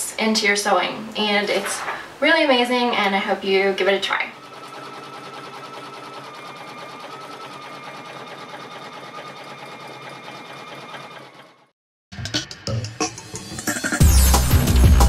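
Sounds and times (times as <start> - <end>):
sewing machine motor whine: 3.8 - 11.7.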